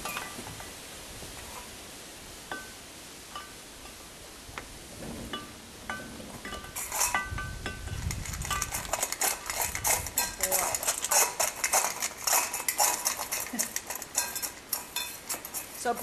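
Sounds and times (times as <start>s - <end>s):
clinks and rattles: 5.0s - 16.0s.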